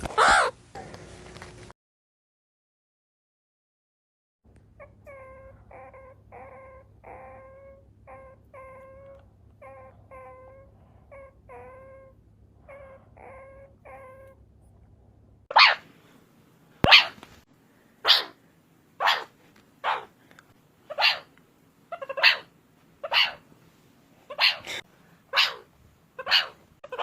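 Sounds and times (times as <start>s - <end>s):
shrill meerkat call: 0.2s - 0.6s, 4.8s - 14.4s, 15.5s - 15.8s, 16.9s - 17.2s, 18.0s - 18.4s, 19.0s - 20.1s, 20.9s - 21.3s, 21.9s - 23.4s, 24.3s - 27.0s
meerkat chirping calls: 4.8s - 14.4s, 15.5s - 15.8s, 16.9s - 17.2s, 18.0s - 18.4s, 19.0s - 20.1s, 20.9s - 21.3s, 21.9s - 23.4s, 24.3s - 27.0s.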